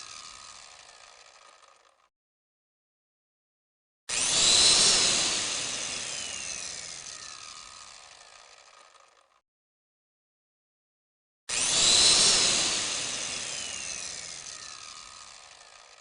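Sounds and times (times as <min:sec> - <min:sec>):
power tool motor whining: 0:00.0 - 0:02.1, 0:04.1 - 0:09.4, 0:11.5 - 0:16.0.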